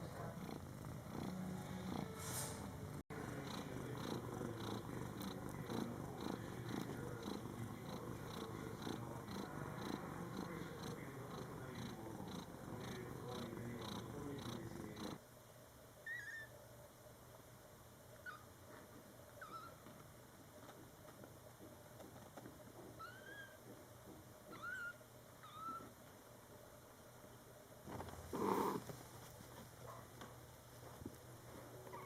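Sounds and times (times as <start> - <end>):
cat purring: 0.0 - 15.2, 27.9 - 29.0.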